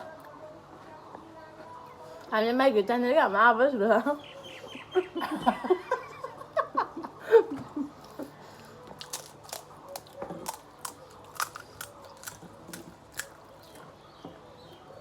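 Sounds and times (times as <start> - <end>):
crunchy food being chewed: 8.0 - 14.8.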